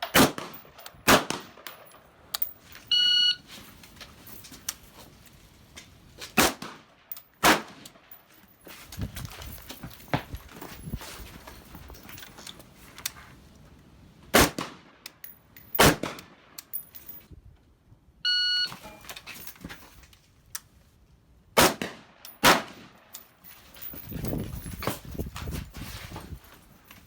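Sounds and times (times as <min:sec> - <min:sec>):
rifle shots: 0:00.0 - 0:01.9, 0:06.4 - 0:07.9, 0:14.3 - 0:14.9, 0:15.8 - 0:16.3, 0:21.6 - 0:23.0
short electronic beep: 0:02.9 - 0:03.4, 0:18.3 - 0:19.0.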